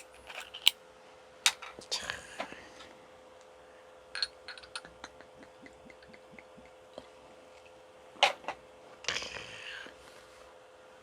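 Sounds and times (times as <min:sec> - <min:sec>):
glass clinking: 0:04.2 - 0:04.8.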